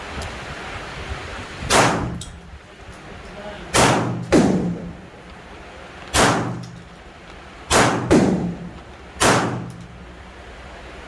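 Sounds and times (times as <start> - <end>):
gunshots with echo: 1.7 - 2.2, 3.7 - 5.1, 6.2 - 6.8, 7.7 - 9.9.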